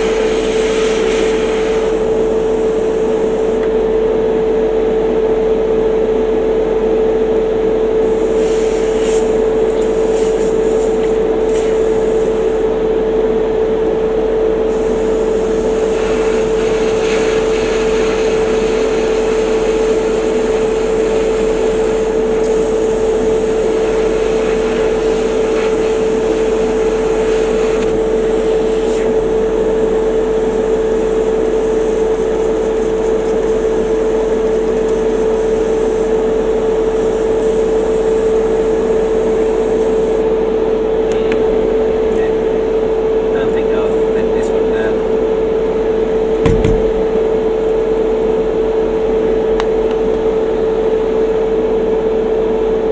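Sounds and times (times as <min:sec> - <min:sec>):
small electric motor humming: 0:00.0 - 0:03.8, 0:08.0 - 0:12.8, 0:14.6 - 0:40.3.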